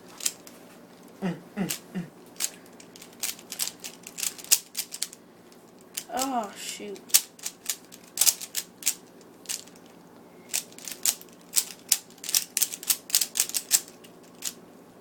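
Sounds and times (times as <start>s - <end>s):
puzzle cube plastic clicks: 0.2s - 0.5s, 2.4s - 5.2s, 5.8s - 6.3s, 7.0s - 9.9s, 10.5s - 14.6s.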